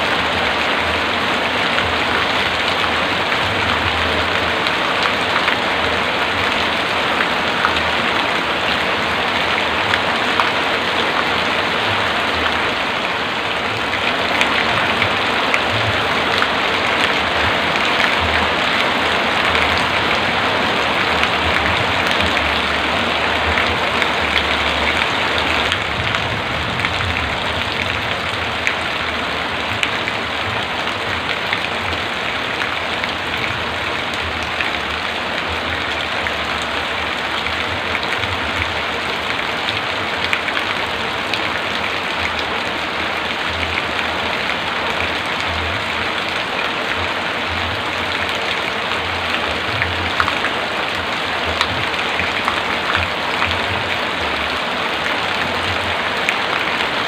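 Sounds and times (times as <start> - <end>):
heavy rain falling: 0.0 - 57.0.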